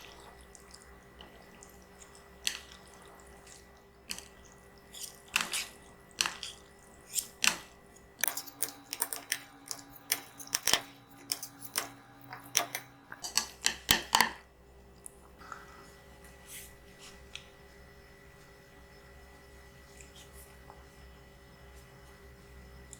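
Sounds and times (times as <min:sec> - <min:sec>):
faint hum: 0:07.8 - 0:22.9.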